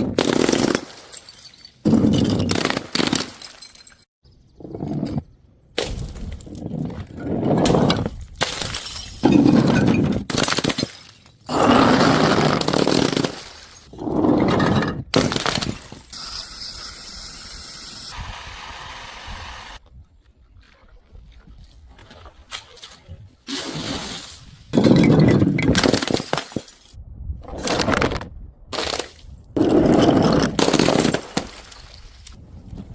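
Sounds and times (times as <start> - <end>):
glass bottles smashing: 0.2 - 4.1, 7.6 - 11.4
glass crunching: 7.5 - 11.5.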